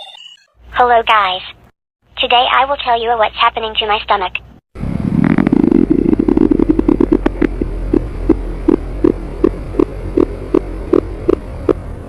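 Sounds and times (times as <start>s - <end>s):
stomach growling: 5.0s - 11.4s.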